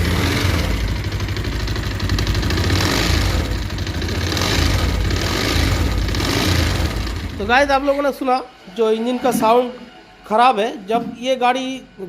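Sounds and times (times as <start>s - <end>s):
fast ticking engine rattle: 0.0s - 7.6s
motorcycle engine idling: 0.0s - 8.0s.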